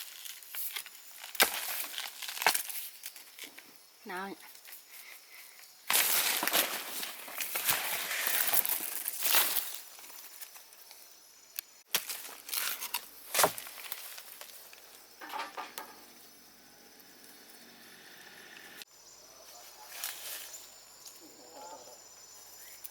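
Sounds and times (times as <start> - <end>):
rustling and crinkling handling: 5.9 - 11.0, 11.9 - 15.0.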